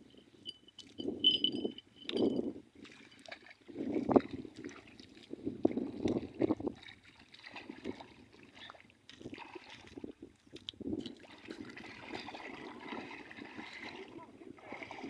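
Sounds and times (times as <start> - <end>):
water sloshing and gurgling: 0.1 - 15.0.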